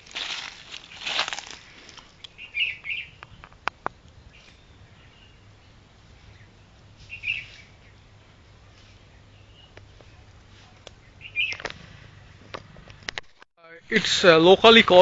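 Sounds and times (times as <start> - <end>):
wild birds chirping: 0.0 - 12.9.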